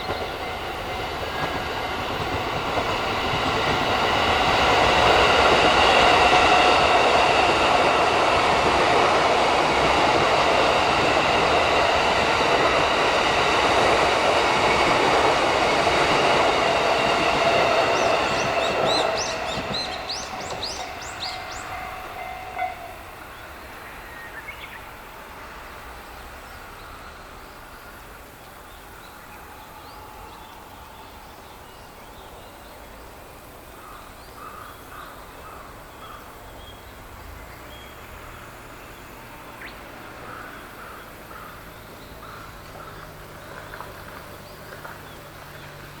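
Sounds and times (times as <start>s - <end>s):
bird calling: 17.9s - 24.9s.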